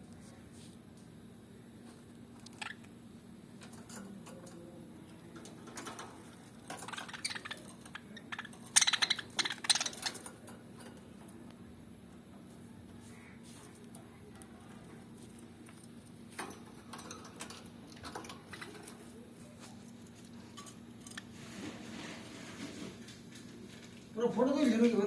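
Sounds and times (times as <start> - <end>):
lovebirds chirping and trilling: 2.3 - 11.6, 12.2 - 21.4.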